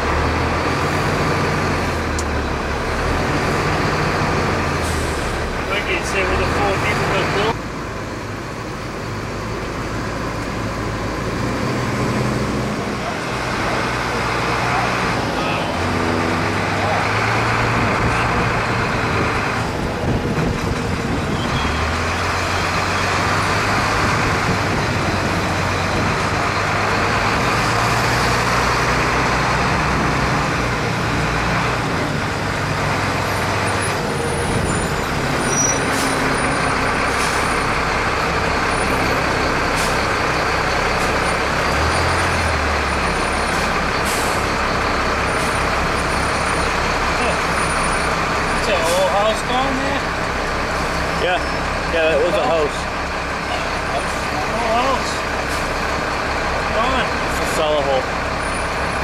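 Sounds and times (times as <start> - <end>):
truck engine and road noise: 0.0 - 59.0.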